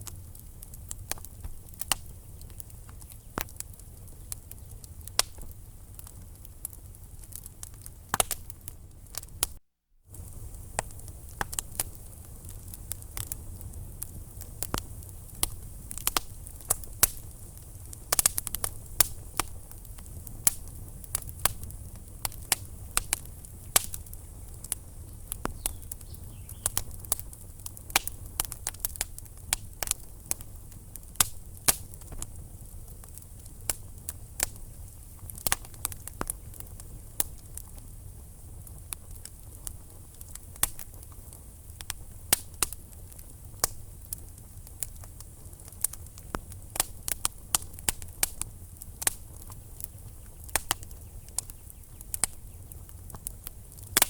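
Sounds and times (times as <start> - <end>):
low rumble of fire: 0.0 - 54.0
wood fire crackling and popping: 0.0 - 54.0.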